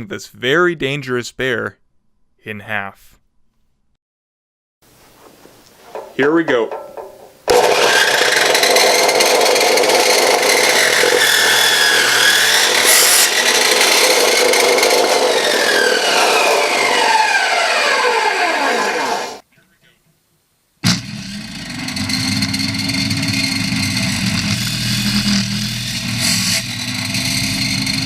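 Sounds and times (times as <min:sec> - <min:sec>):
chop saw cutting: 0:07.4 - 0:19.4, 0:20.8 - 0:28.0.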